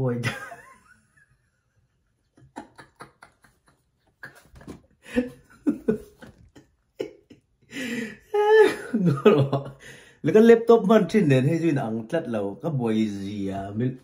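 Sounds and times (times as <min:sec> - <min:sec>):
person murmuring and chuckling: 0:02.4 - 0:09.9.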